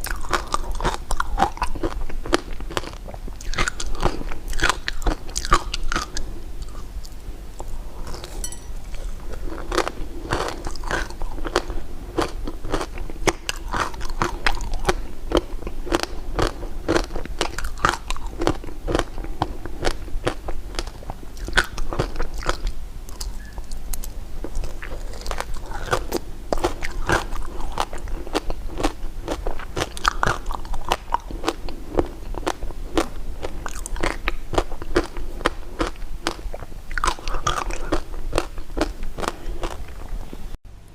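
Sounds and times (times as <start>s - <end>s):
chewing crunchy candy: 0.0s - 40.4s.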